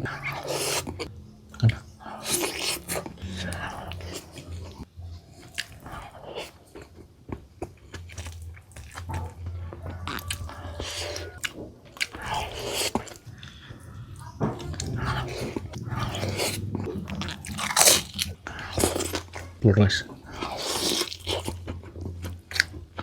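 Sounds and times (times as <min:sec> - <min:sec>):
faint low hum: 0:00.0 - 0:23.0
person chewing crunchy food: 0:00.0 - 0:23.0.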